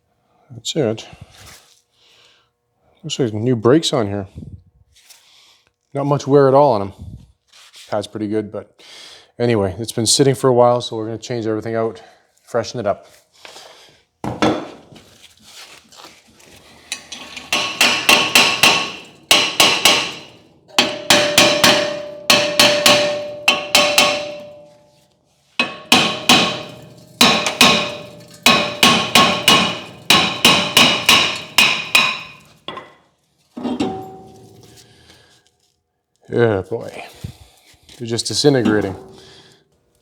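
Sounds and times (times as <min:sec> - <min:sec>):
hammer striking metal: 0:17.4 - 0:24.8, 0:25.6 - 0:33.0, 0:33.6 - 0:34.8, 0:38.6 - 0:39.2.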